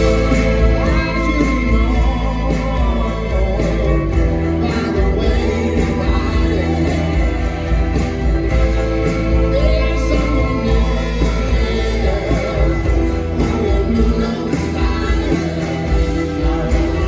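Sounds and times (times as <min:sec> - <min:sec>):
person singing: 0:00.0 - 0:17.0
rock band playing live: 0:00.0 - 0:17.0.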